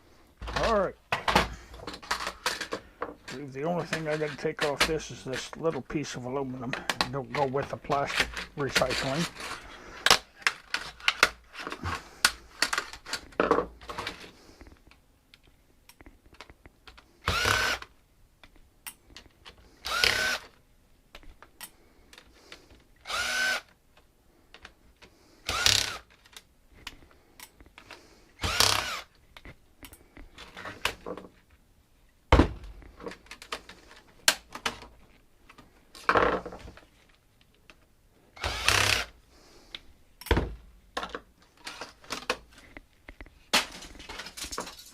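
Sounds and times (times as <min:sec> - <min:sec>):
clicks and clatter of parts: 0:00.4 - 0:05.8, 0:06.6 - 0:17.1, 0:20.4 - 0:22.9, 0:23.9 - 0:31.6, 0:32.6 - 0:37.9, 0:39.7 - 0:44.9
cordless drill motor whirring: 0:17.2 - 0:17.9, 0:19.8 - 0:20.6, 0:23.0 - 0:23.7, 0:25.4 - 0:26.1, 0:28.4 - 0:29.1, 0:38.4 - 0:39.1.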